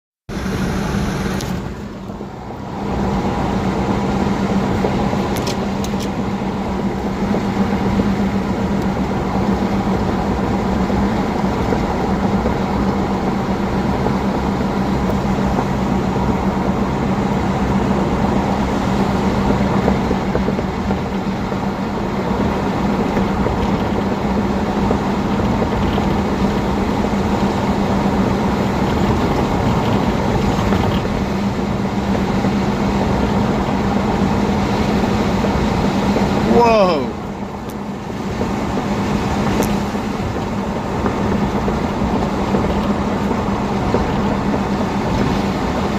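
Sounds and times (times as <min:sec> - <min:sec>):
steady rushing noise: 0:00.3 - 0:45.9.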